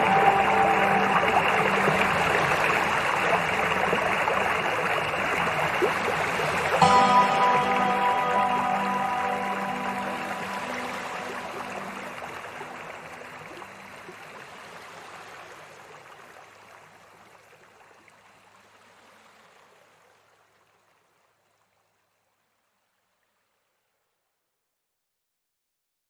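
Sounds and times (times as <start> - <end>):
river water rushing: 0.0 - 16.7.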